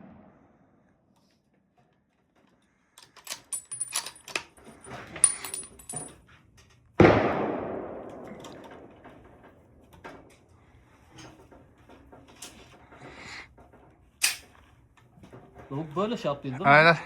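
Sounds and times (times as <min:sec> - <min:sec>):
firearm metallic clicks and rattles: 0:01.8 - 0:06.9, 0:08.0 - 0:10.5, 0:14.2 - 0:15.4
gunshot: 0:07.0 - 0:09.0.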